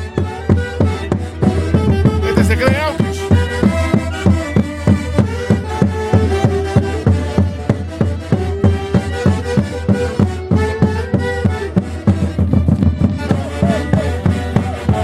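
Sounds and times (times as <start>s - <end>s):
low drum beat: 0.2s - 8.8s, 11.2s - 15.0s
held melody lines: 0.7s - 12.4s.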